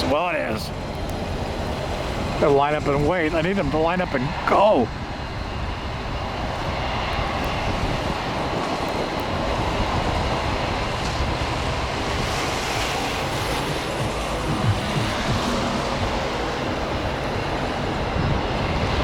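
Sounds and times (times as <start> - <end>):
jet airliner engine noise: 0.0 - 19.0
wind on microphone: 4.3 - 19.0.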